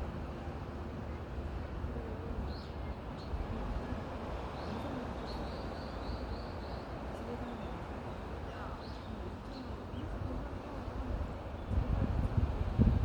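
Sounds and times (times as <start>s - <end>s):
wind rumble on microphone: 11.3s - 13.0s.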